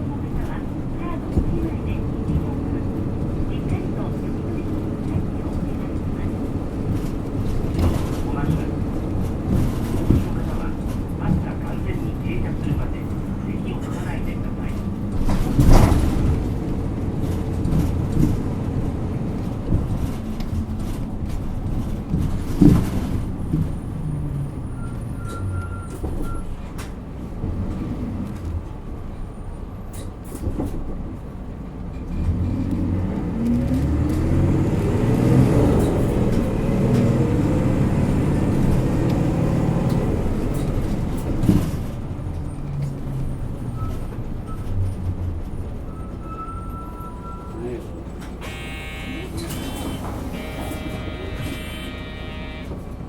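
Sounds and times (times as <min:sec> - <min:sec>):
bus diesel engine revving: 0:32.0 - 0:46.2, 0:47.4 - 0:53.0.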